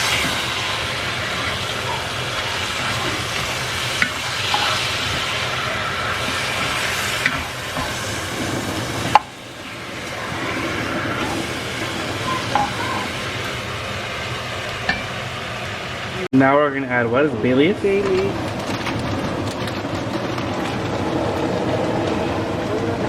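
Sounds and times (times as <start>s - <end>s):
chicken sizzling in hot oil: 0.0s - 16.3s.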